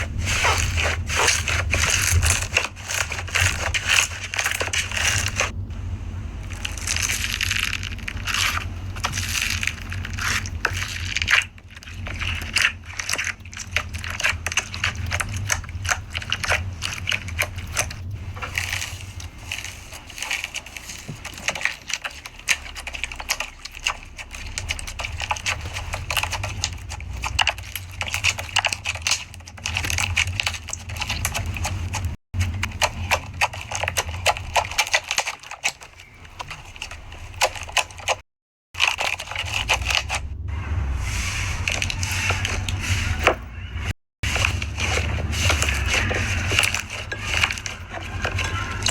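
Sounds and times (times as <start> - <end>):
low hum: 0.0 - 28.5, 39.0 - 48.9.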